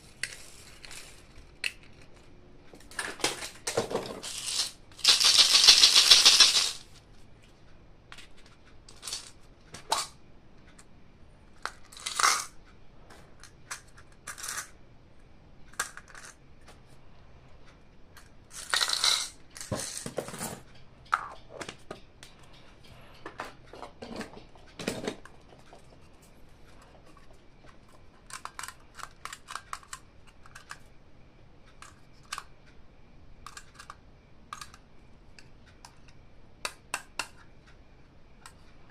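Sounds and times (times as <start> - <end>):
plastic toy clicks and taps: 36.6 - 37.5.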